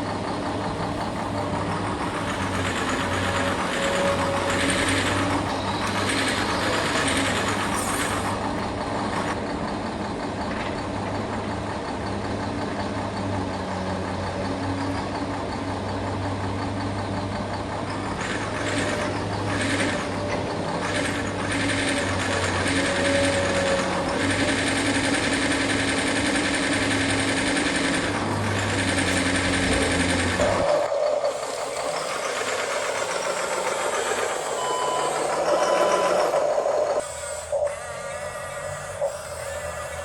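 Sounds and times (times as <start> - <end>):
small electric motors whirring: 2.0 - 8.5, 20.8 - 40.0.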